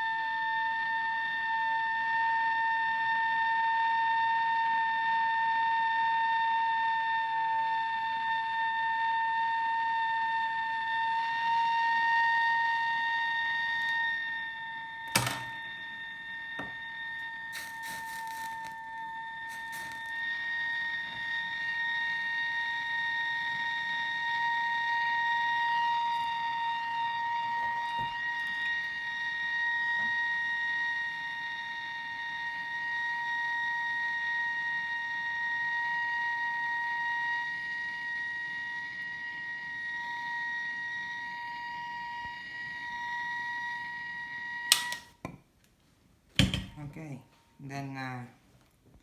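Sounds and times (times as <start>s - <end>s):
blowtorch flame whistling and hissing: 10.4s - 45.1s.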